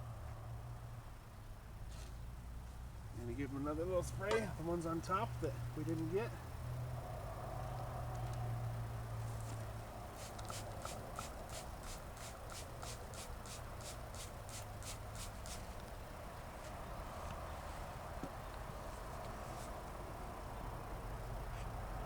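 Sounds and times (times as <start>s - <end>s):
spray bottle squirting: 10.2s - 15.9s.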